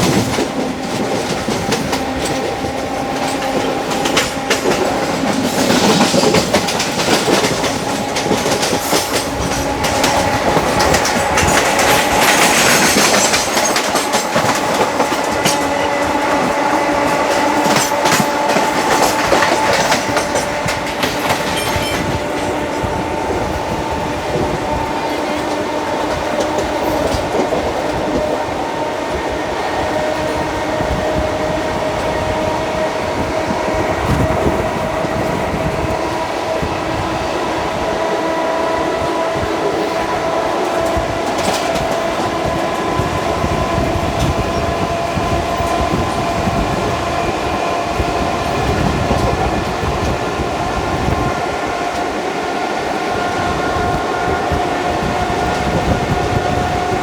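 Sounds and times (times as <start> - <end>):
clack over rail joints: 0.0 - 28.4, 39.6 - 46.6
train wheels rumbling on rail: 0.0 - 57.0.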